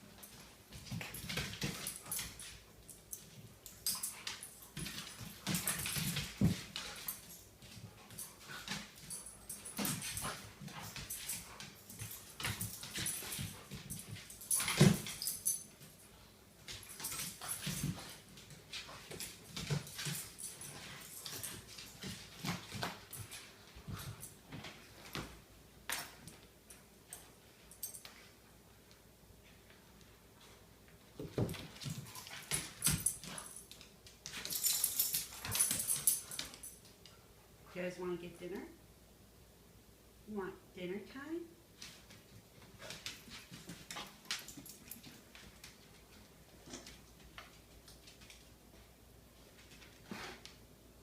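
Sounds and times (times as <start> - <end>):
dogs play-wrestling noises: 0.0 - 37.6, 41.6 - 50.7.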